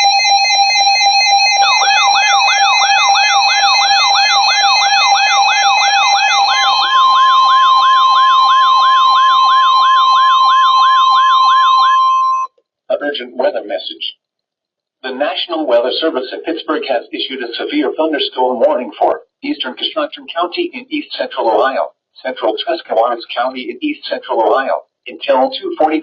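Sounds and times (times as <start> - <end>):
steady high tone: 1.5 - 12.5
rising siren-like sweep: 1.8 - 12.5.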